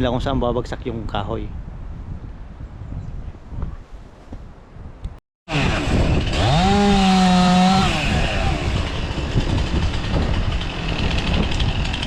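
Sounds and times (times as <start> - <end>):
chainsaw engine revving: 5.5 - 12.0.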